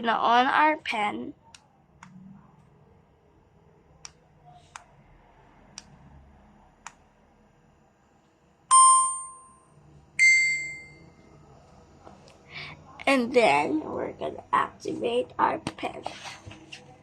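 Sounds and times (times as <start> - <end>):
two-note electronic chime: 8.7 - 9.6, 10.2 - 11.0.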